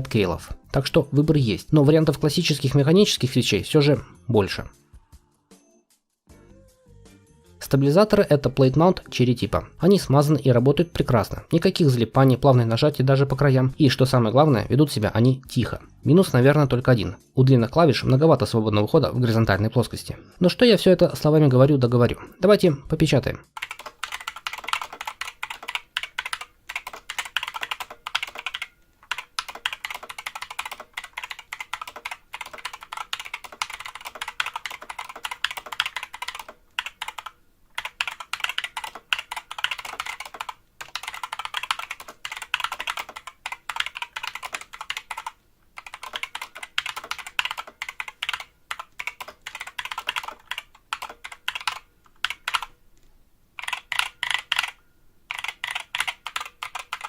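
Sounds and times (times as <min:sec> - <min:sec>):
mechanical keyboard typing: 0:23.5 - 0:52.8, 0:53.6 - 0:57.0.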